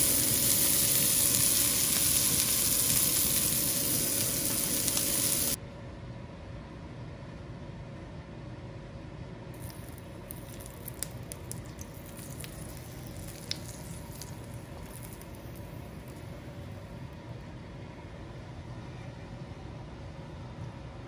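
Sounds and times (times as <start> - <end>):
sharp crackles and pops: 0.0 - 5.6, 9.6 - 16.5
steak sizzling in a pan: 0.0 - 5.6, 9.6 - 15.8.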